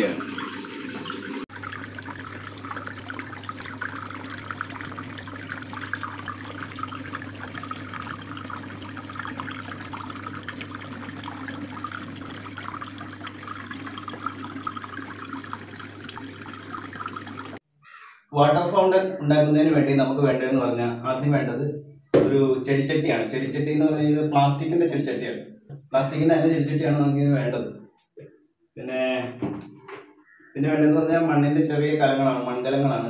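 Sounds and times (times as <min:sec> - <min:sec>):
fountain water trickling and splashing: 0:00.0 - 0:17.6.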